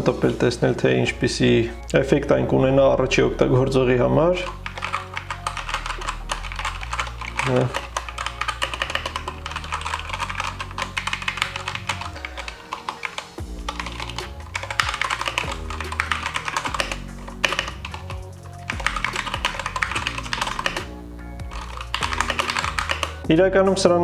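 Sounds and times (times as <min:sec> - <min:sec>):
background music: 0:00.0 - 0:24.0
mechanical keyboard typing: 0:04.4 - 0:23.2.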